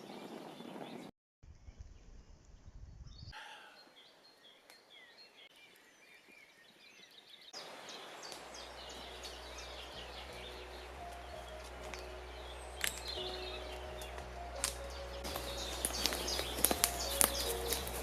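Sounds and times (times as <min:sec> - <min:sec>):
birds chirping: 0:00.0 - 0:01.1, 0:03.2 - 0:18.0
background hiss: 0:03.7 - 0:18.0.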